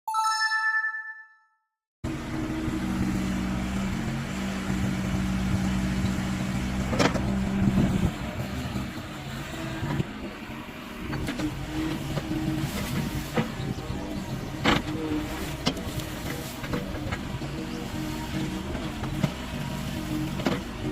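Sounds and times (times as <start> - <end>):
short ringing chime: 0.1 - 1.6
heavy-equipment engine running: 2.1 - 20.9.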